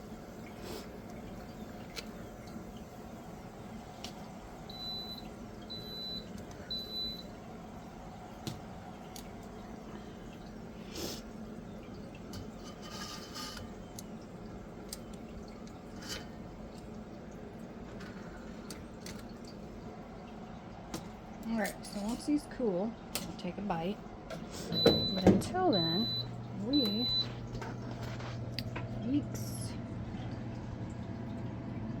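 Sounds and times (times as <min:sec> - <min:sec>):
control panel beeping: 0:24.8 - 0:27.3.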